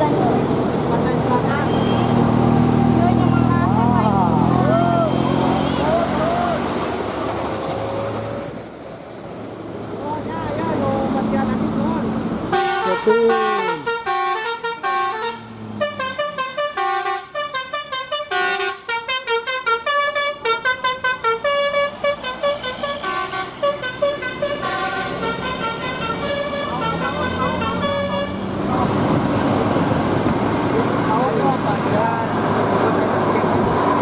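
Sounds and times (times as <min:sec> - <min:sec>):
bus trumpet horns playing melody: 0:04.9 - 0:06.4, 0:12.5 - 0:28.5.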